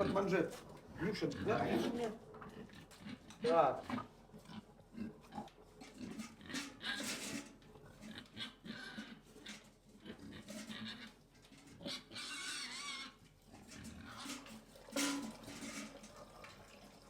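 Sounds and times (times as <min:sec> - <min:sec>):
pig squealing: 0:00.0 - 0:00.4, 0:01.0 - 0:07.4, 0:08.1 - 0:13.2, 0:13.8 - 0:14.4
pig grunting and snuffling: 0:00.0 - 0:15.1.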